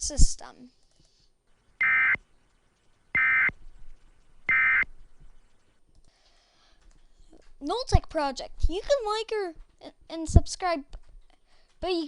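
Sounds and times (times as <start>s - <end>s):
buzzy digital data tone bursts: 1.8s - 2.2s, 3.1s - 3.5s, 4.5s - 4.9s.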